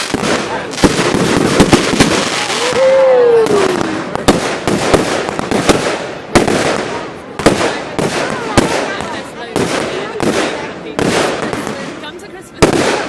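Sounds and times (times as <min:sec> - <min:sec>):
firecrackers crackling: 0:00.0 - 0:13.0
fireworks bangs: 0:00.0 - 0:13.0
falling firework whistle: 0:02.4 - 0:04.0.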